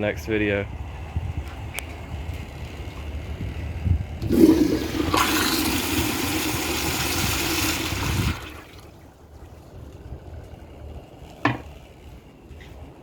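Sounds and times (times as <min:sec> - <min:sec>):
toilet flushing: 0:04.2 - 0:09.0.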